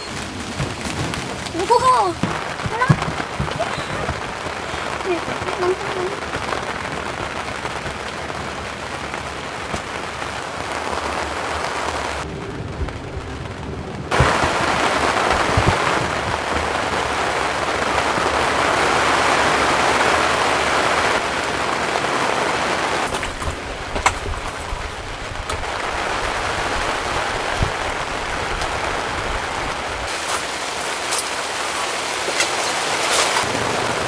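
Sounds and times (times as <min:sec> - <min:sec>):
rain falling: 0:00.0 - 0:34.0.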